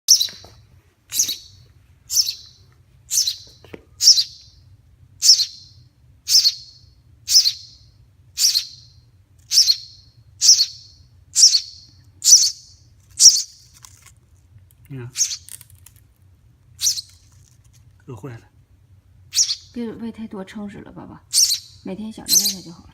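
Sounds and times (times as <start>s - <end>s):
baby bird chirping: 0.1s - 0.5s, 1.1s - 4.6s, 5.2s - 13.7s, 15.1s - 15.6s, 16.8s - 17.3s, 19.3s - 19.9s, 21.3s - 22.9s.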